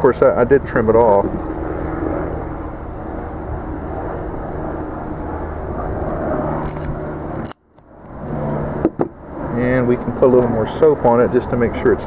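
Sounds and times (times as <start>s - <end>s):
motor drone with low hum: 0.0s - 12.0s.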